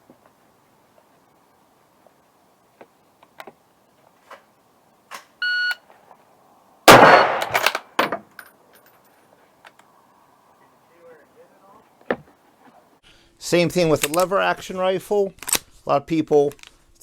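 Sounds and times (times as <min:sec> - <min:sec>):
short electronic beep: 0:05.4 - 0:05.8
loud rifle shot: 0:06.9 - 0:07.9.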